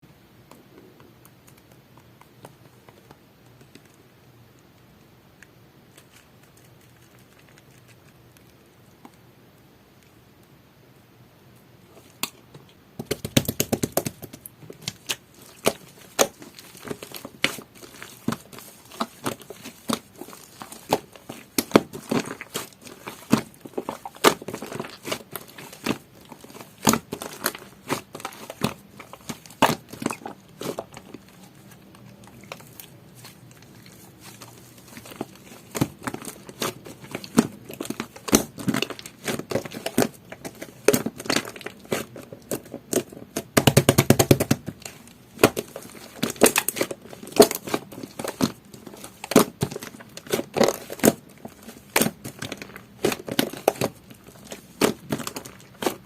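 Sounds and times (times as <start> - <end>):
slime squished by hand: 13.0 - 56.0.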